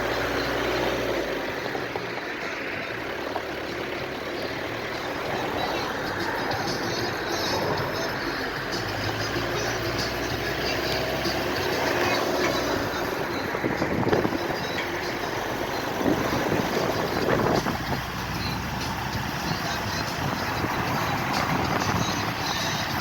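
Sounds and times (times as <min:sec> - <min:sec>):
motor vehicle running: 0:00.0 - 0:23.0
road noise: 0:00.0 - 0:23.0.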